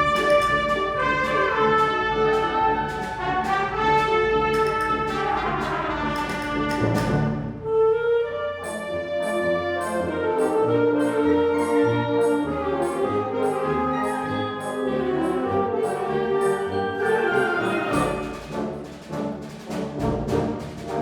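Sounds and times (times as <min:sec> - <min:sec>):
light high tapping beat: 0:00.0 - 0:07.2, 0:09.2 - 0:18.8
wind band playing: 0:00.0 - 0:21.0.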